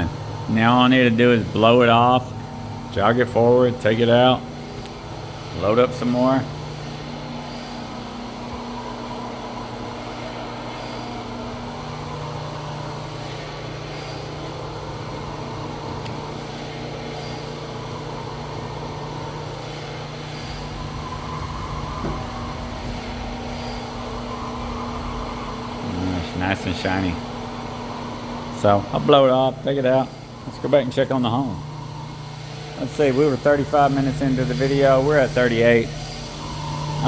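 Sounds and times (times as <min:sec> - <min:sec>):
machinery humming: 0:00.0 - 0:37.0
low rumble: 0:20.4 - 0:25.8.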